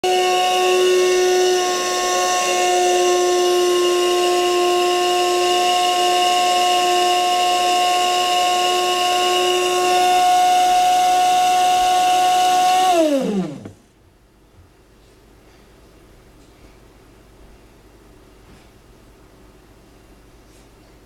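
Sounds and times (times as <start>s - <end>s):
coffee maker whine: 0.0s - 13.8s.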